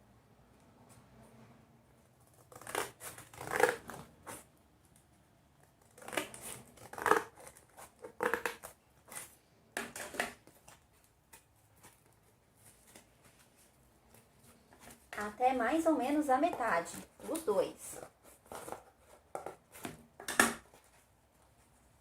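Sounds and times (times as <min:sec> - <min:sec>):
scissors cutting paper: 0:02.2 - 0:04.5, 0:05.6 - 0:09.3, 0:16.1 - 0:19.9.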